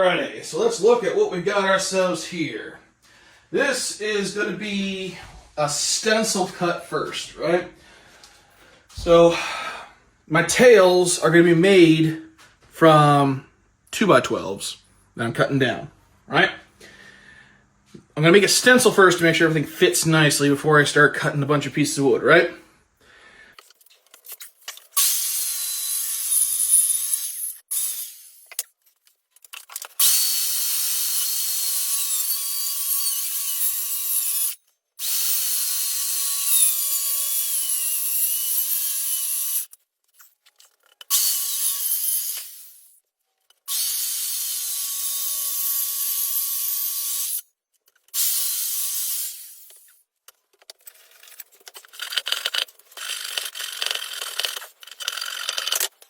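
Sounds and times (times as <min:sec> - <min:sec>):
power saw cutting wood: 0:25.0 - 0:28.4, 0:30.0 - 0:39.7, 0:41.1 - 0:42.8, 0:48.1 - 0:49.9, 0:51.9 - 0:55.9.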